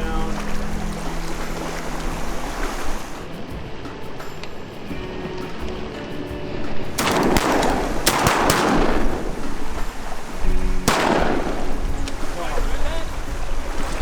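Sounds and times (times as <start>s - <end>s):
wind rumble: 0.0s - 3.9s, 6.9s - 14.0s
shotgun blasts: 6.9s - 14.0s.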